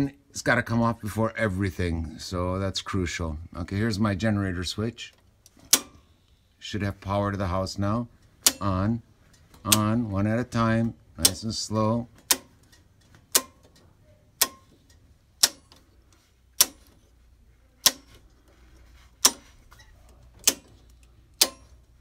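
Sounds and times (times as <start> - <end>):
circuit breakers snapping on: 5.1 - 6.1, 8.4 - 15.9, 16.5 - 17.0, 17.7 - 18.3, 19.2 - 22.0.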